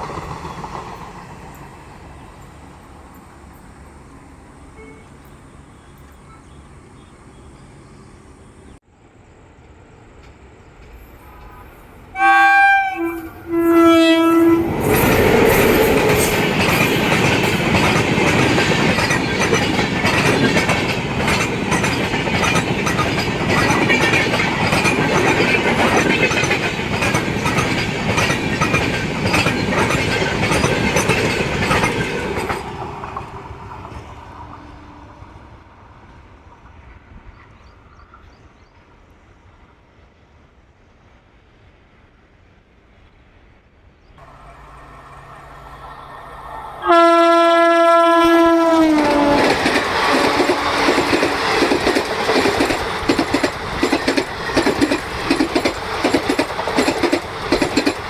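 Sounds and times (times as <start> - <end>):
train wheels clickety-clack: 0.0 - 3.6, 14.7 - 34.7, 48.6 - 58.0
locomotive horn blasts: 4.7 - 5.3, 11.3 - 14.9, 44.2 - 49.5.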